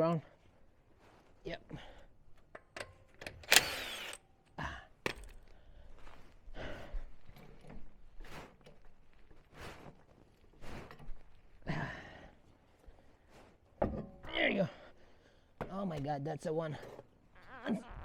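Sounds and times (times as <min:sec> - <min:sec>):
man breathing and sighing: 0:01.6 - 0:02.2, 0:04.5 - 0:07.4, 0:11.5 - 0:13.4.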